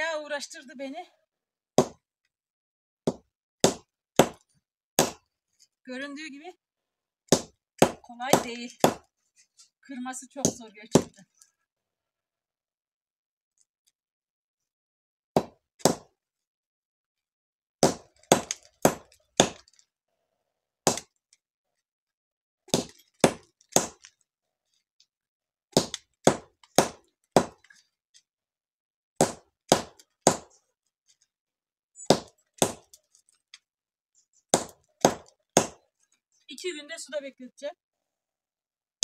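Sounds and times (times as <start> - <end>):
hard stones being struck: 1.8 - 2.0, 3.1 - 5.3, 7.3 - 9.1, 15.4 - 16.1, 17.8 - 19.7, 20.8 - 21.1, 22.7 - 24.1, 25.7 - 27.8, 29.2 - 30.6, 32.0 - 33.0, 34.5 - 35.8.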